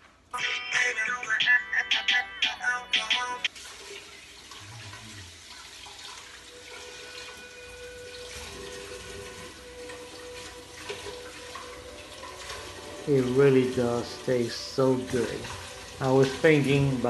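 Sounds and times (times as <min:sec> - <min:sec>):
tap water running into sink: 0:03.5 - 0:17.0.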